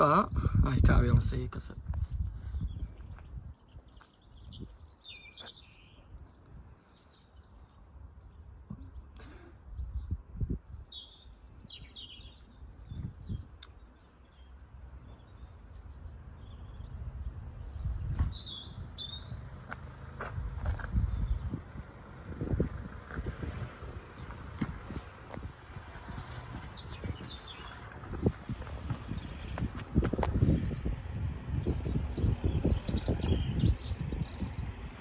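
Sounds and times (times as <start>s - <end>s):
small birds chirping: 0.0s - 35.0s
steady low rumble: 14.7s - 35.0s.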